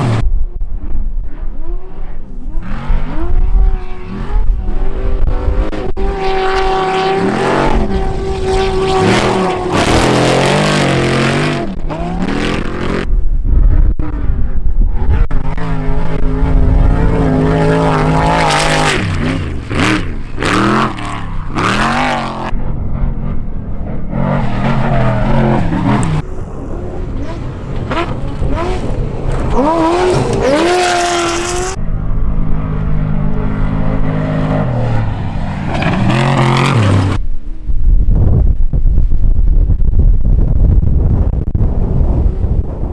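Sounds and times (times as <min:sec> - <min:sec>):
race vehicle engines revving: 0:00.0 - 0:13.2, 0:14.0 - 0:37.3.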